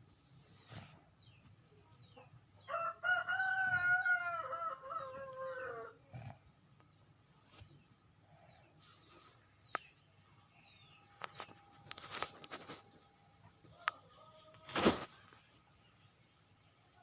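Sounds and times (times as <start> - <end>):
rooster crowing: 2.7 - 6.0.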